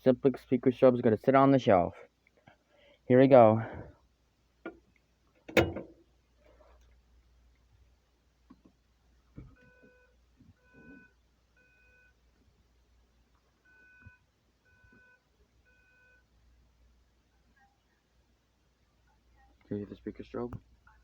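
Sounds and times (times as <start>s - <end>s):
fire alarm beeps: 9.6s - 12.2s, 13.6s - 16.2s.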